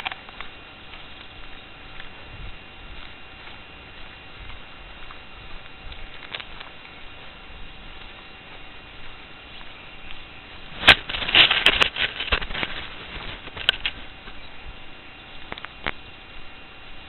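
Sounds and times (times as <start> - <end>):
crackling and rustling: 0.0 - 17.0
sharp crack: 10.8 - 12.8.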